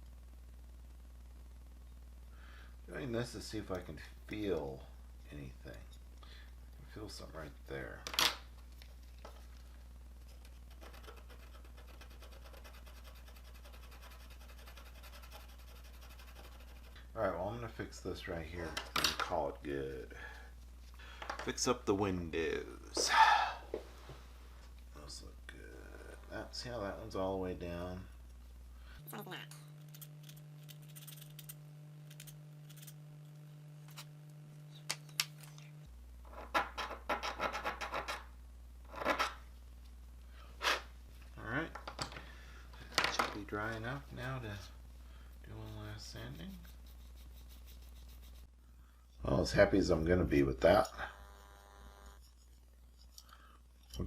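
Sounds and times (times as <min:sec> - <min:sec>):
steady low hum: 0:00.0 - 0:54.0
sandpaper scratching on metal: 0:10.7 - 0:17.0, 0:45.5 - 0:48.5.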